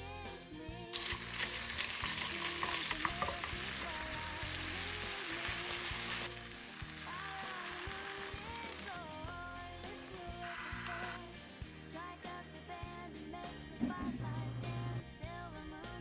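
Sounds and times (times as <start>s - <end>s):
food sizzling in frying pan: 1.0s - 12.8s.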